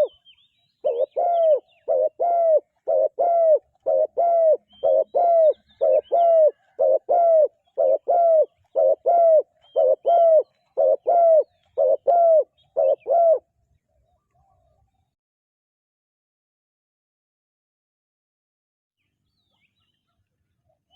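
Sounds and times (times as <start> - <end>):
dove cooing: 0.0 - 0.2, 0.8 - 13.5.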